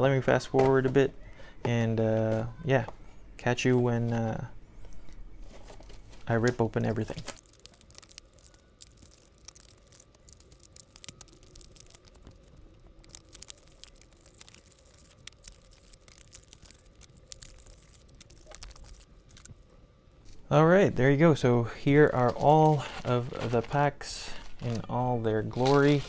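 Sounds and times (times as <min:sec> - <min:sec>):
plastic wrap crinkling: 0:05.4 - 0:20.4, 0:22.1 - 0:26.0.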